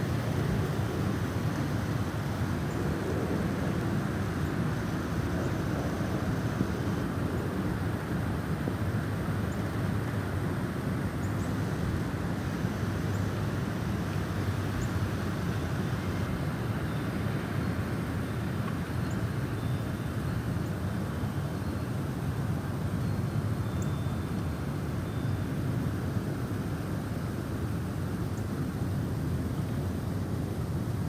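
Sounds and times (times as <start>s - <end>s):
snowstorm wind roaring: 0.0s - 18.7s.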